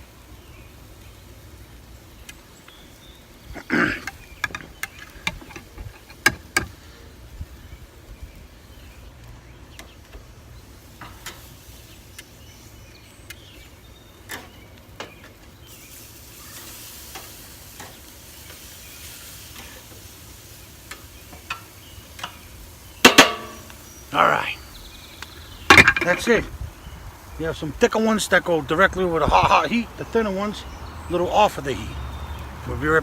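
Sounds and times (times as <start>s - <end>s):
steaks sizzling on grill: 0.0s - 33.0s
sharp clicks and knocks: 4.0s - 6.8s, 25.2s - 26.2s.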